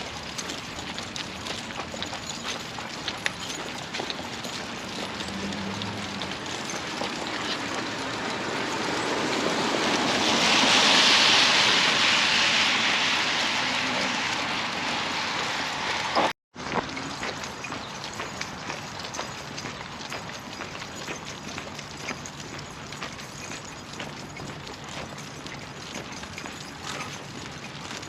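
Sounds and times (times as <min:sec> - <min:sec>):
vehicle passing by: 0:04.8 - 0:16.3.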